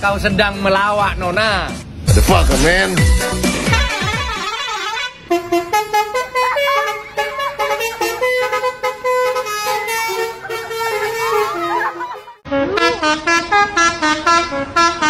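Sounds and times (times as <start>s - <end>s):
multi-tone bus air horn melody: 3.2s - 15.0s.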